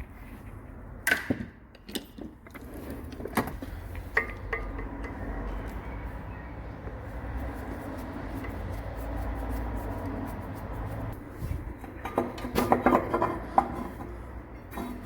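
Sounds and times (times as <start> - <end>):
hand tools knocking on metal: 4.1 - 5.4.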